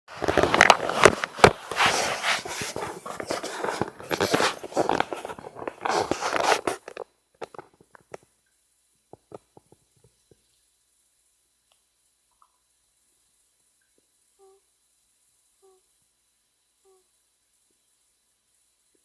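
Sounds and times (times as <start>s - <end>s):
close rustling and scraping: 0.1s - 8.2s.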